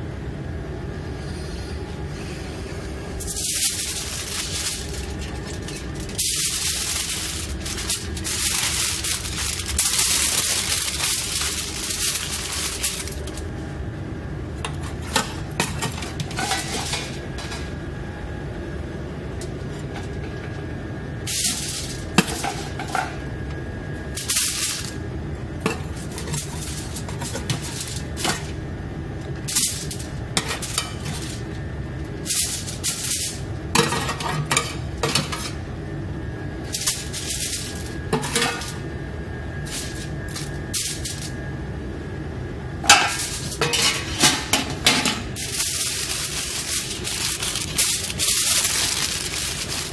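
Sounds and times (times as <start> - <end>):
steady background hum: 0.0 - 49.9
dishes and utensils clattering: 14.6 - 17.8, 21.4 - 23.3, 25.6 - 28.6, 29.5 - 31.5, 32.3 - 35.6, 36.8 - 38.9, 42.8 - 49.9.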